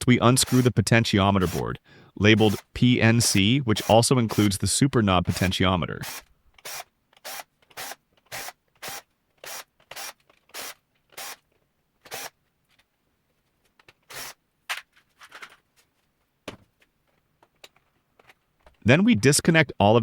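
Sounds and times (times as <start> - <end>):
screwdriver rasping scrape: 2.4 - 4.5.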